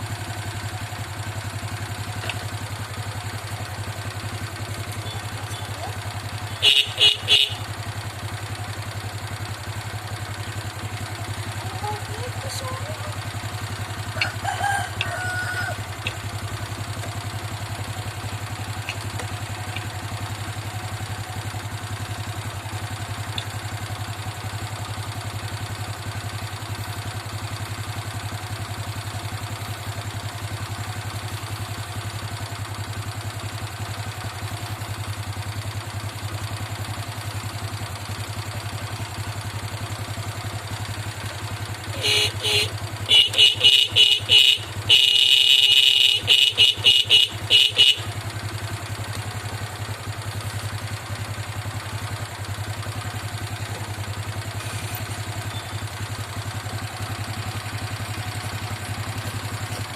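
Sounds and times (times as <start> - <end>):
motorcycle engine idling: 0.0 - 59.9
motorcycle horn beeping: 4.3 - 8.4, 10.5 - 23.8, 30.6 - 32.5, 39.3 - 59.9
rooster crowing: 14.1 - 16.0.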